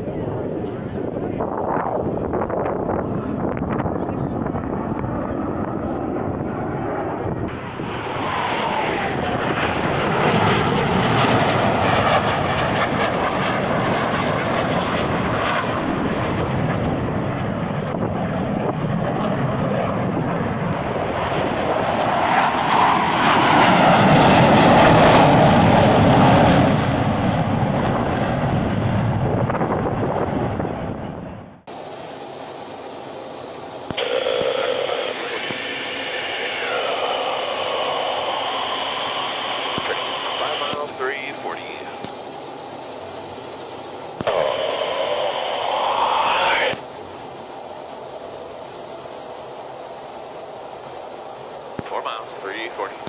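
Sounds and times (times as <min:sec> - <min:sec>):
airplane flying past: 0:00.0 - 0:53.0.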